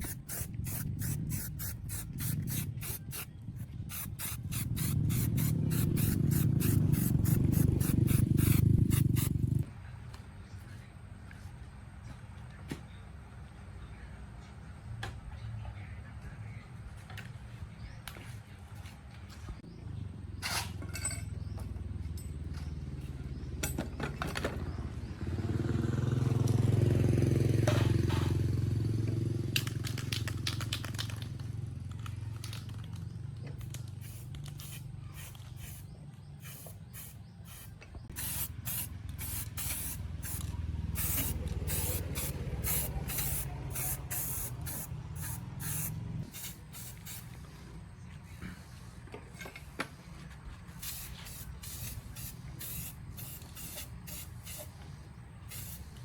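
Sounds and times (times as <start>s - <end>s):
pressurized spray bursts: 0.0s - 9.5s, 34.0s - 35.8s, 36.4s - 47.3s, 50.8s - 54.7s, 55.5s - 56.0s.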